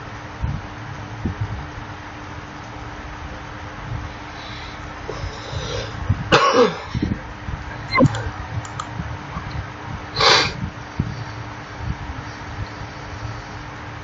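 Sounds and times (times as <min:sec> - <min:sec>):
person coughing: 0:06.3 - 0:06.9
person clearing throat: 0:06.4 - 0:06.9.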